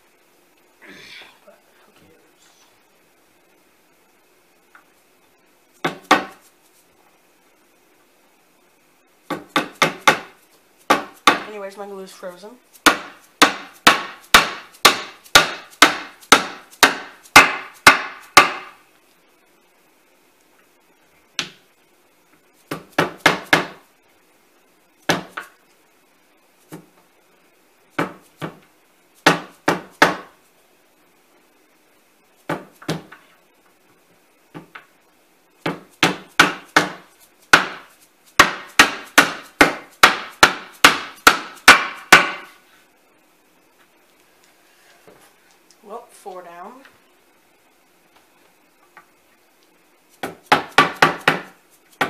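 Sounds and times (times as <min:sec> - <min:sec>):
hammer striking wood: 0:05.8 - 0:06.4, 0:09.3 - 0:11.5, 0:12.8 - 0:18.8, 0:22.7 - 0:23.8, 0:29.2 - 0:30.3, 0:35.6 - 0:42.6, 0:50.2 - 0:51.6.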